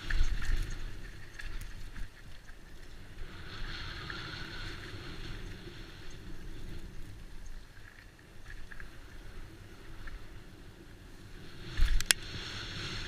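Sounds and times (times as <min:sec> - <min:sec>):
faint clicks: 0:00.0 - 0:03.1, 0:04.0 - 0:10.3, 0:11.7 - 0:12.4
wind buffeting microphone: 0:00.0 - 0:13.0.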